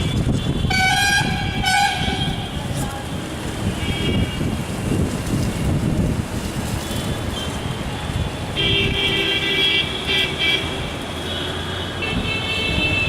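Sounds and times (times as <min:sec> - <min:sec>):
vehicle horns honking: 0:00.0 - 0:02.6, 0:03.7 - 0:04.7, 0:08.5 - 0:13.0
wind buffeting microphone: 0:00.0 - 0:09.2
traffic noise: 0:00.0 - 0:13.0.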